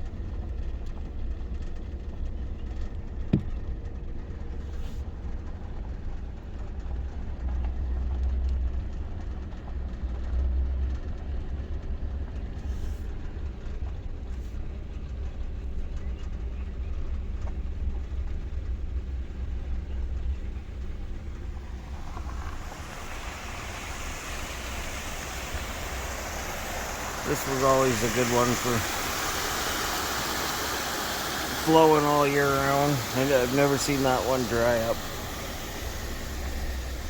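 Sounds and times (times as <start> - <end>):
car engine rumble: 0.0 - 37.0
water rushing: 21.4 - 37.0.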